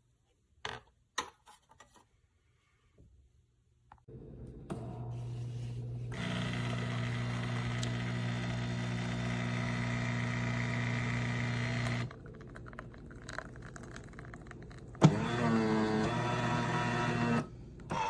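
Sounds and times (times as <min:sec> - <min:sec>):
espresso machine motor humming: 0:04.5 - 0:12.2, 0:15.0 - 0:18.0.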